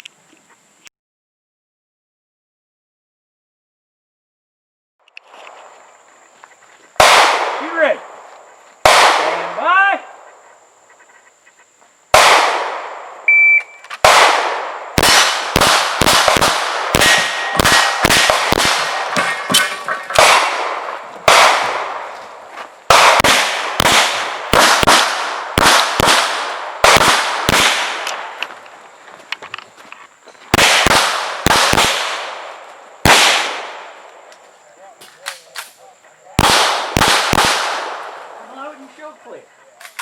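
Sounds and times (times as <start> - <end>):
pistol shots: 7.0 - 7.9, 8.8 - 9.6, 12.1 - 13.2, 14.0 - 22.2, 22.9 - 28.4, 30.5 - 33.9, 36.4 - 38.4.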